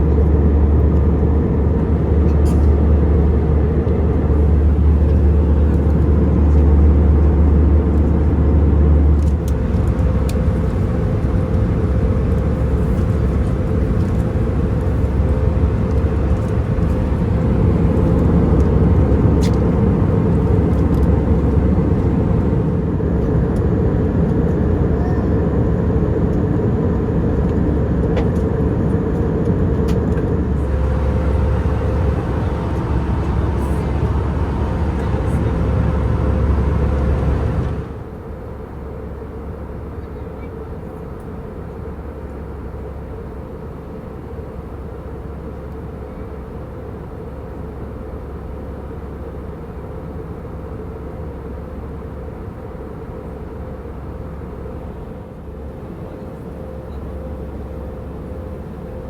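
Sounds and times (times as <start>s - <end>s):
deep low rumble: 0.0s - 38.2s
airplane cabin engine drone: 0.0s - 59.0s
faint steady hum: 30.1s - 38.1s.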